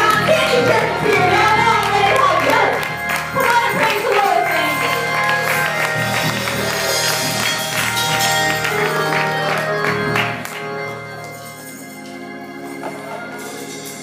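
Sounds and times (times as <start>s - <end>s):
congregation calling out: 0.0s - 11.2s
congregation clapping: 0.0s - 14.0s
gospel church music: 0.0s - 14.0s.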